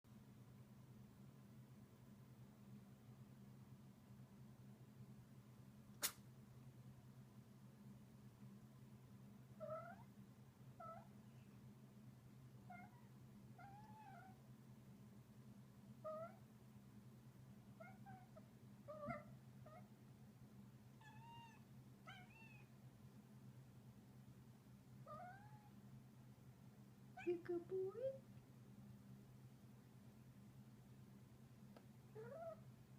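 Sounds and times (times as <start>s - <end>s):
faint low hum: 0.1s - 32.9s
cat trilling: 9.6s - 10.1s, 12.7s - 14.4s, 16.0s - 16.4s, 21.0s - 22.7s, 25.1s - 25.7s, 32.2s - 32.6s.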